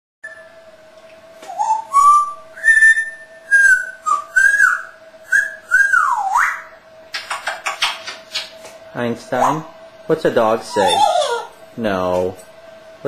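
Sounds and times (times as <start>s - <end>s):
parrot whistling: 1.4s - 8.5s, 10.7s - 11.6s.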